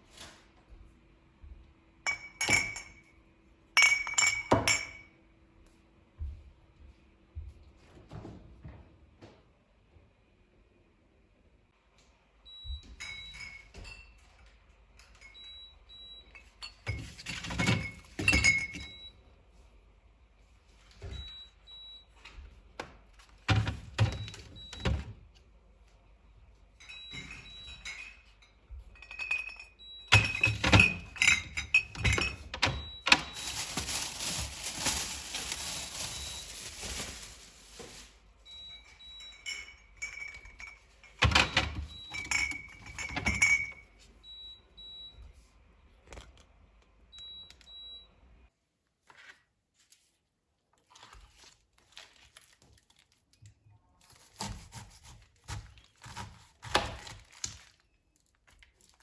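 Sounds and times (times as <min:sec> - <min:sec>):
dishes and glassware clinking: 0:02.0 - 0:03.1, 0:03.8 - 0:05.2, 0:12.9 - 0:15.4, 0:16.4 - 0:19.0, 0:26.8 - 0:38.0, 0:39.1 - 0:43.9.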